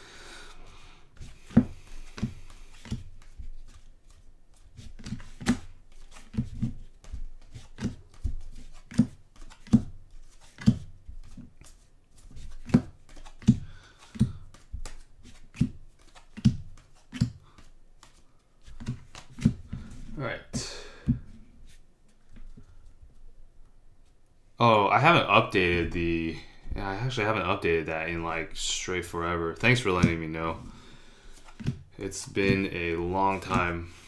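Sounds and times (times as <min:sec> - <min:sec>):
trading cards flipping: 0:01.2 - 0:20.1, 0:31.3 - 0:34.0.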